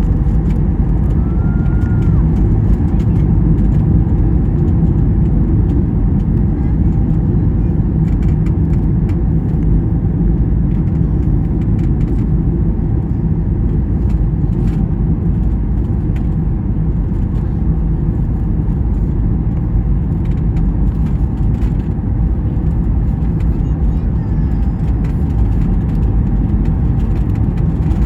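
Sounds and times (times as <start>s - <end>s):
airplane cabin engine rumble: 0.0s - 28.0s
faint clicks and rattles: 18.9s - 28.0s.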